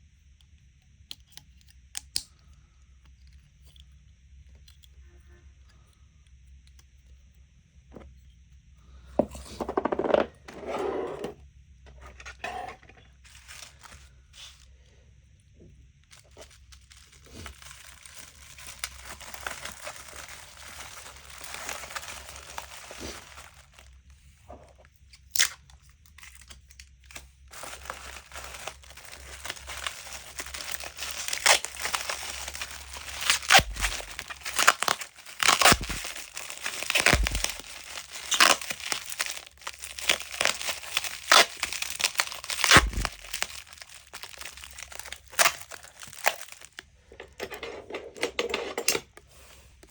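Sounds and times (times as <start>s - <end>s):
crinkling and tearing: 13.2s - 14.7s, 16.0s - 46.9s.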